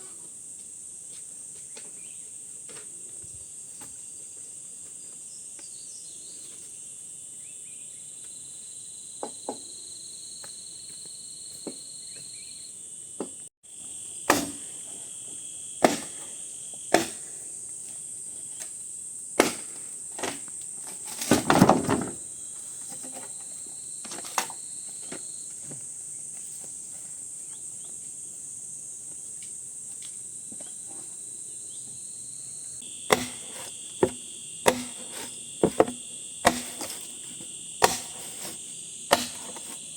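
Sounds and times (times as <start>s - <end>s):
crickets chirping: 0.0s - 39.9s
sharp knocks: 33.1s - 37.2s, 37.8s - 39.8s.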